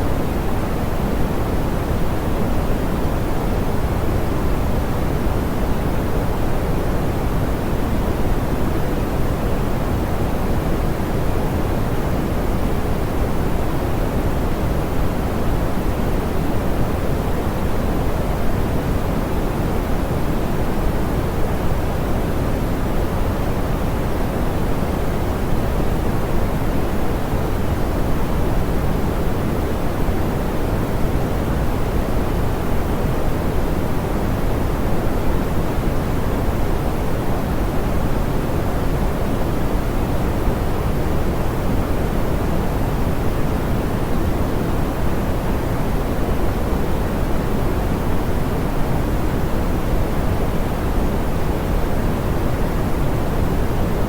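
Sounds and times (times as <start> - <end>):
soft pink noise hiss: 0.0 - 54.0.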